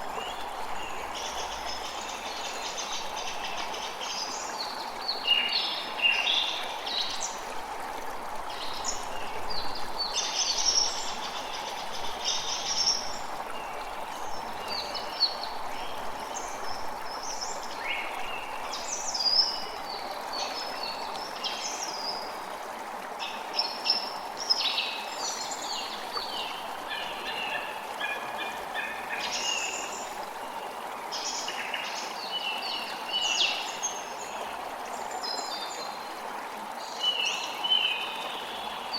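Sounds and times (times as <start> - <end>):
flowing stream water: 0.0 - 38.9.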